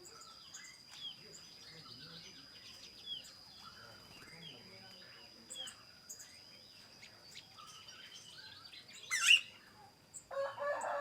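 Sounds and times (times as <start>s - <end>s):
birds chirping and twittering: 0.0s - 11.0s
rooster crowing: 10.3s - 11.0s.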